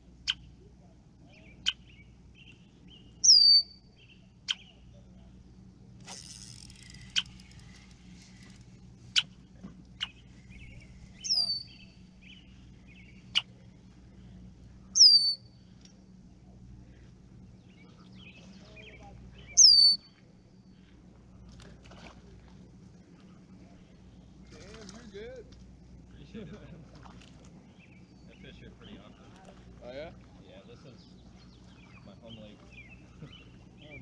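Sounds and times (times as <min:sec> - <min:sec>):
bird twittering: 0:00.2 - 0:00.5, 0:01.3 - 0:04.8, 0:06.4 - 0:09.4, 0:10.0 - 0:13.7, 0:14.9 - 0:15.6, 0:17.6 - 0:20.1
bird calling downward notes: 0:03.2 - 0:03.8, 0:10.0 - 0:12.5, 0:15.0 - 0:15.5, 0:18.8 - 0:20.2.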